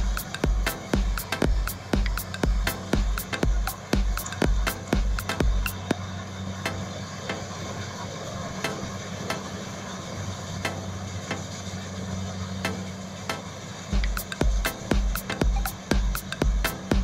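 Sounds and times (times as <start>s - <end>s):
sharp percussive clicks: 0.0s - 6.0s, 12.6s - 17.0s
low synth drone: 0.0s - 17.0s.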